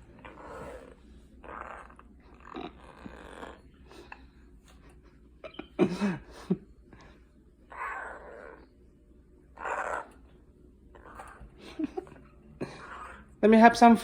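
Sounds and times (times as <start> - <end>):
parrot growling calls: 0.0 - 4.2, 7.7 - 8.8, 9.5 - 13.4.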